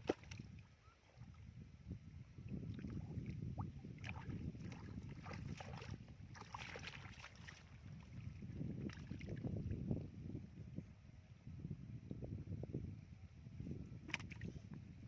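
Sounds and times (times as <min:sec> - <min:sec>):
small splashes and clicks: 0:00.0 - 0:00.6, 0:14.1 - 0:14.5
water and mud sloshing: 0:00.0 - 0:01.4, 0:02.4 - 0:09.9, 0:14.0 - 0:14.6.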